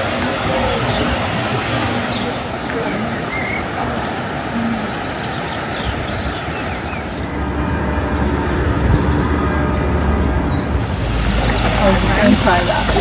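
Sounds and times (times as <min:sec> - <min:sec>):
passing vehicle rumble and whine: 0:00.0 - 0:13.0.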